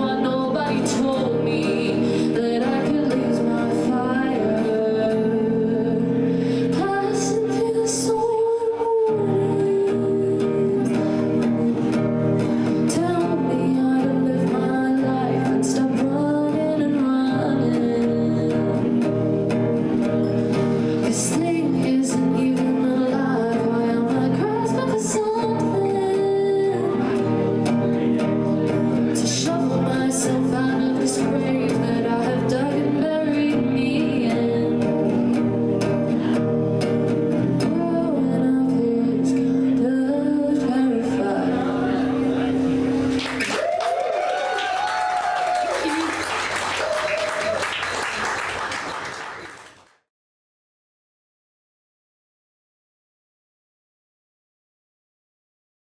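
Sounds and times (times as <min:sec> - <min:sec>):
woman singing: 0:00.0 - 0:19.9, 0:21.0 - 0:42.6, 0:45.6 - 0:47.0
plucked guitar: 0:00.0 - 0:43.6.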